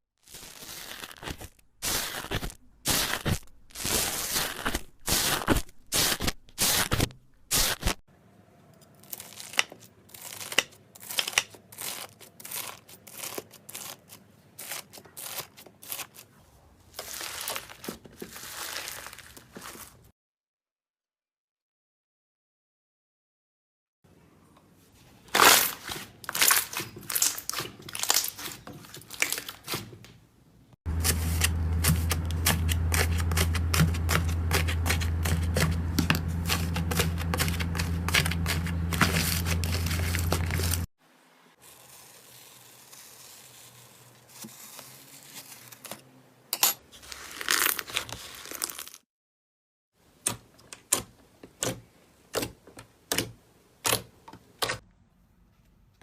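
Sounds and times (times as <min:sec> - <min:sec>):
slime crackling and popping: 0:00.2 - 0:08.0
low hum: 0:30.9 - 0:40.9.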